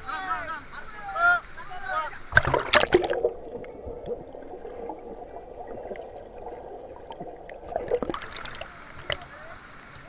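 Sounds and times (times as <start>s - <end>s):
muffled gurgle of running water: 0.0s - 10.0s
sharp water splashes: 2.3s - 9.4s.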